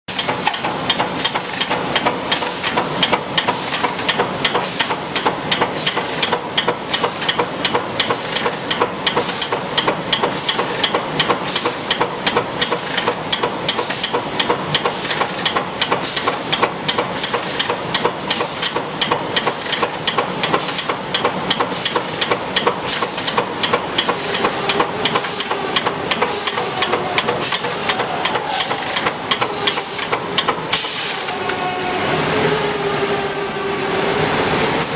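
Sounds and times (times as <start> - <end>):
spot welding machine hissing: 12.6 - 16.6, 17.2 - 34.9
faint high squeal: 31.0 - 34.2.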